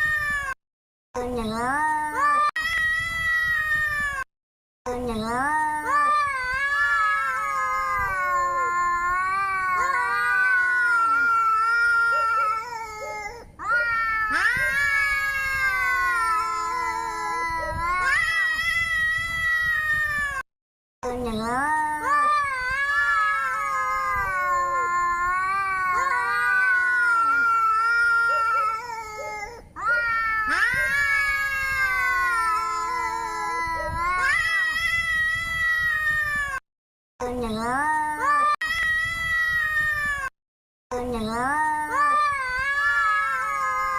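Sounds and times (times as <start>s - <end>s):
angry cat yowling: 6.5s - 20.4s, 22.6s - 36.6s.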